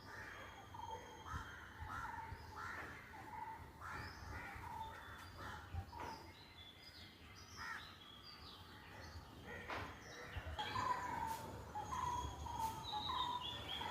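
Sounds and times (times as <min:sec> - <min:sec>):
birds chirping and whistling: 0:03.6 - 0:13.9.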